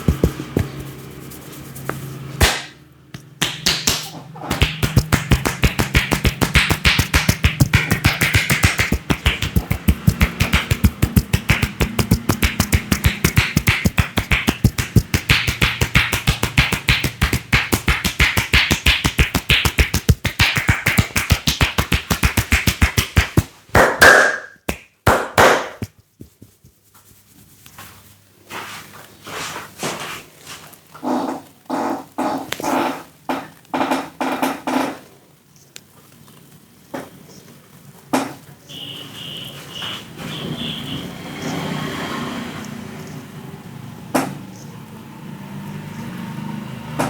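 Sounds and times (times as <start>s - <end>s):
hands slapping and tapping head: 0.0s - 27.8s.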